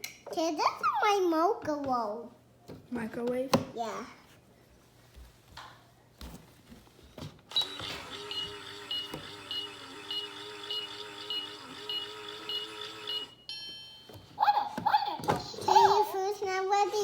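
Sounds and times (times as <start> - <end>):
toy microwave beeps: 7.5 - 14.2
toy microwave humming: 7.5 - 15.6.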